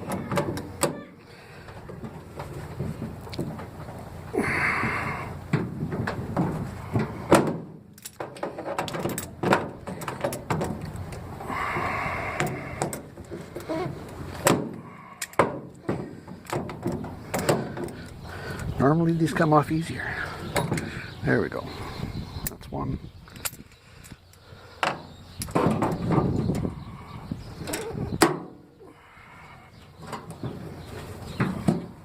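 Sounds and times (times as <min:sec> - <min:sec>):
metal clinks and knocks: 0:05.5 - 0:11.3.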